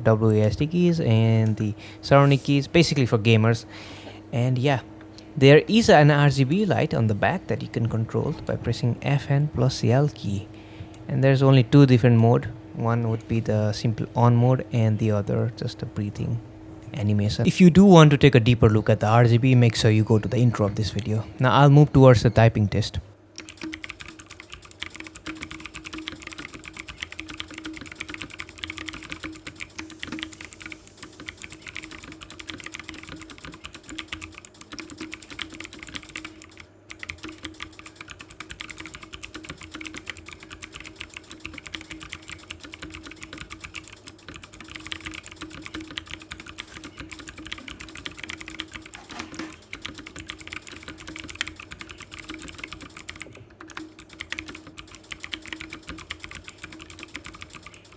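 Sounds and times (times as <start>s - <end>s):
steady low hum: 0.0s - 57.9s
fast mechanical keyboard typing: 17.0s - 57.9s.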